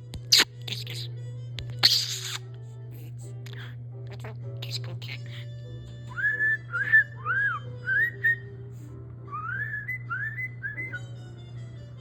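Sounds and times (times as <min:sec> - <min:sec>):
quiet background music: 0:00.0 - 0:12.0
whistled notes: 0:09.3 - 0:11.0.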